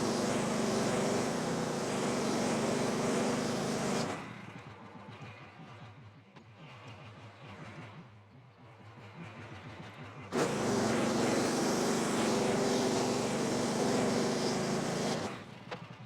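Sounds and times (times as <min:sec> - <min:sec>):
sawmill engine running: 0:00.0 - 0:04.3, 0:10.3 - 0:15.6.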